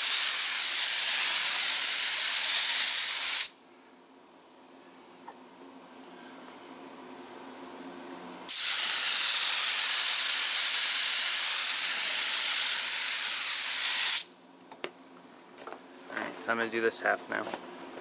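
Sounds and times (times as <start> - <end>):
paint spray gun hissing: 0.0 - 3.6, 8.5 - 14.3.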